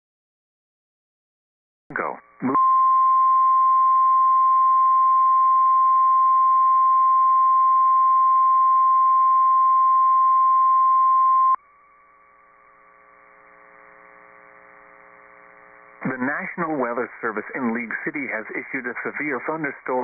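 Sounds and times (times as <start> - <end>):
faint radio hum: 1.9 - 2.6, 12.2 - 20.0.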